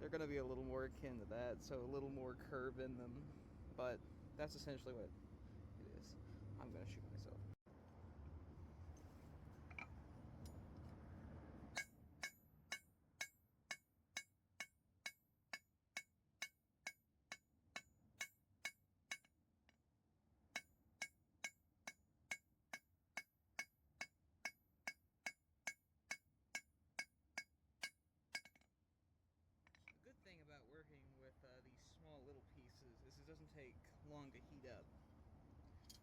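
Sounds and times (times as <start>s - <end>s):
hammer striking steel on anvil: 11.8s - 19.3s.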